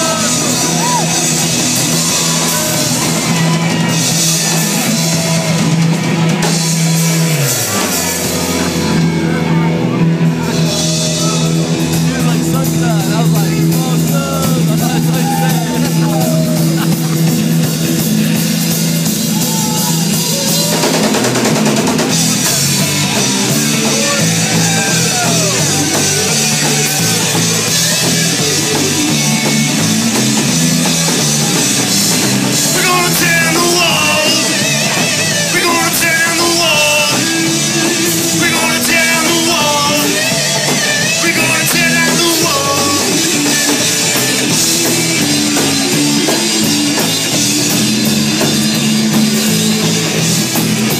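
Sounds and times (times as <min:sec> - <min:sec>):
rock band playing: 0:00.0 - 0:50.9.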